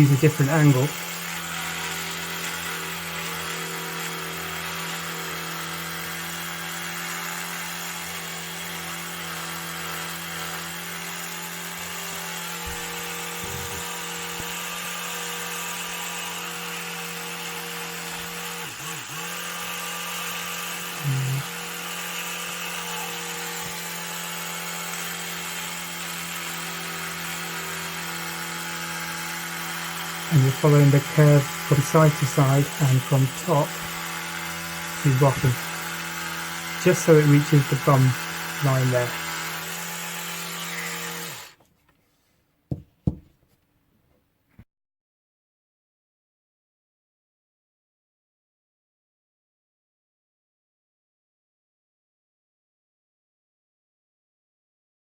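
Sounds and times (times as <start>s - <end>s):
electric toothbrush buzzing: 0.0s - 41.6s.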